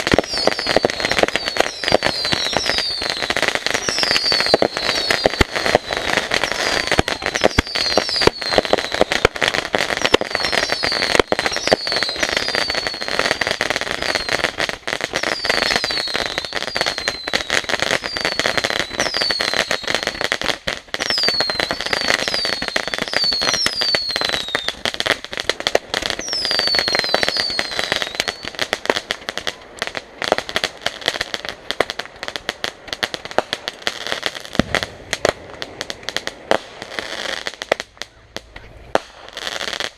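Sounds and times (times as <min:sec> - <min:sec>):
fireworks whistles falling in pitch: 0:00.0 - 0:31.4
fireworks crackling pops: 0:00.0 - 0:39.9.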